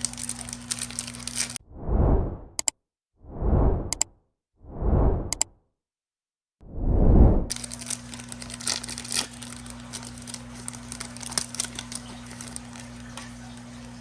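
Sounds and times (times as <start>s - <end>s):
wrapper tearing and crinkling: 0.0s - 1.6s, 7.5s - 13.7s
low hum: 1.7s - 2.6s, 3.3s - 4.0s, 4.7s - 5.4s, 6.6s - 7.6s.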